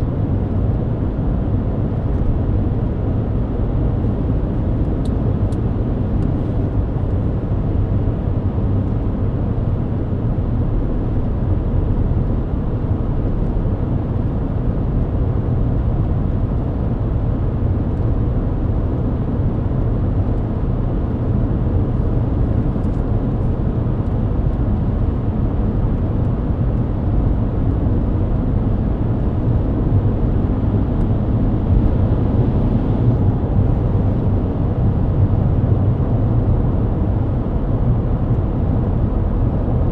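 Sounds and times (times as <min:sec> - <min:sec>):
car engine drone: 0:00.0 - 0:39.9.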